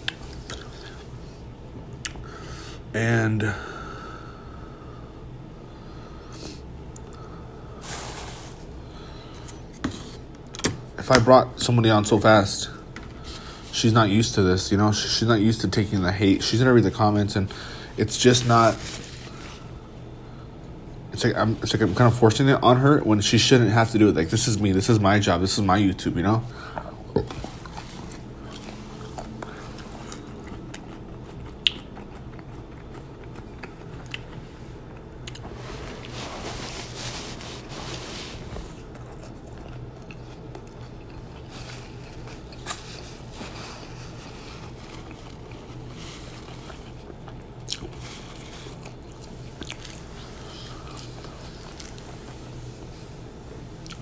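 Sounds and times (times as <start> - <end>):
steady low hum: 0.0 - 54.0
person chewing crunchy food: 26.8 - 52.4.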